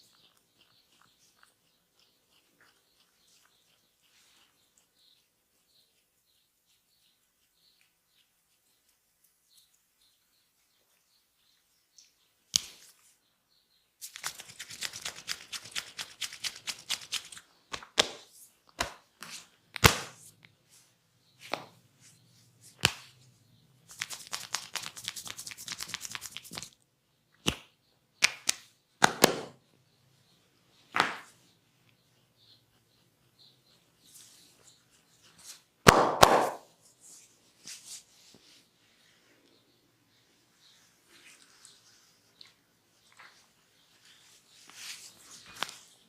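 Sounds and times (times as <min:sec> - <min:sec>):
sharp slaps on skin: 0:17.7 - 0:18.2, 0:18.8 - 0:19.0, 0:19.8 - 0:20.2, 0:22.8 - 0:23.1, 0:27.4 - 0:29.6, 0:31.0 - 0:31.3, 0:35.9 - 0:36.7
rapid massage strikes: 0:35.9 - 0:36.7.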